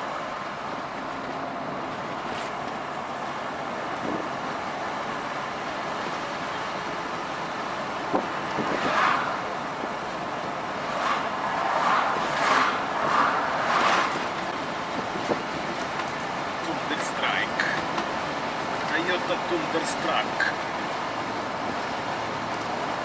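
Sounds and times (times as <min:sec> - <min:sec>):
truck road and engine noise: 0:00.0 - 0:23.0
vehicles whooshing past: 0:07.0 - 0:17.9.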